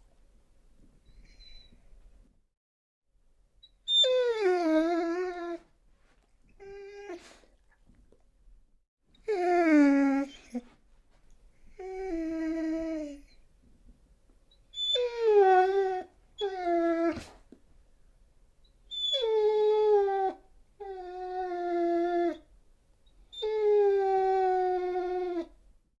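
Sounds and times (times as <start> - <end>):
dog whining howls: 3.9 - 5.6, 9.2 - 10.6, 11.8 - 13.4, 14.7 - 17.3, 18.9 - 22.5, 23.3 - 25.6.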